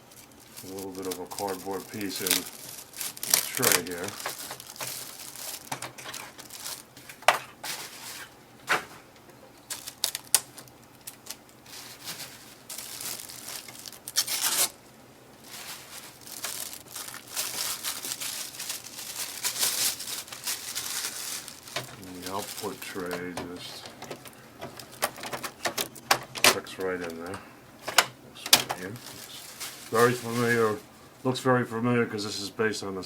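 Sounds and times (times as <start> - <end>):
plastic wrapping crinkling: 0.0 - 31.0
tape tearing rip: 13.2 - 14.8.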